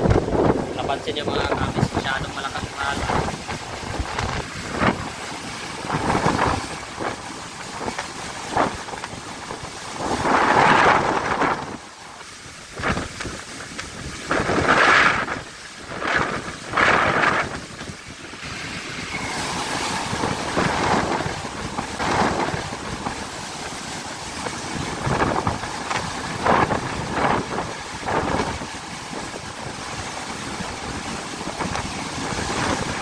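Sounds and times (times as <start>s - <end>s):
big waves crashing: 0.0s - 33.0s
wind buffeting microphone: 0.0s - 33.0s.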